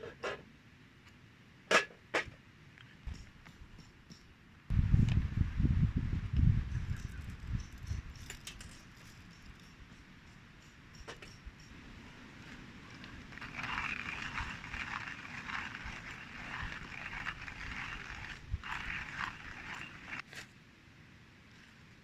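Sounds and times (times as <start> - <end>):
coffee grinder crunching beans: 12.8 - 20.2.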